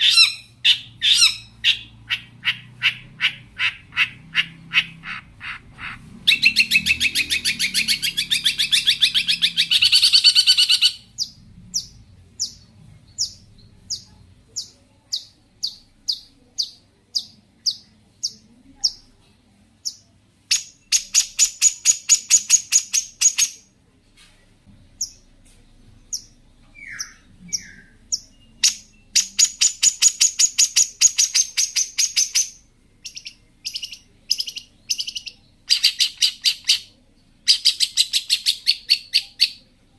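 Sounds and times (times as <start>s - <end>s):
bird chattering song: 0.0s - 19.1s, 19.8s - 23.7s, 26.0s - 39.7s.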